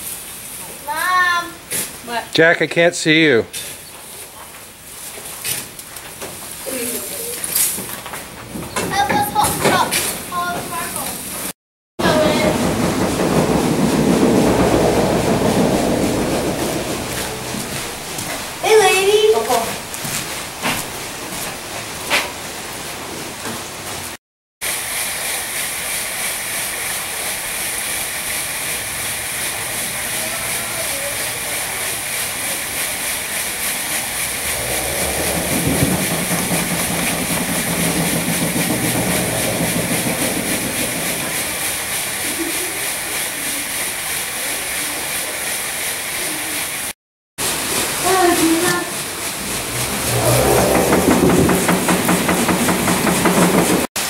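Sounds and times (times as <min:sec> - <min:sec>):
water rushing over a water wheel: 0:08.9 - 0:54.0.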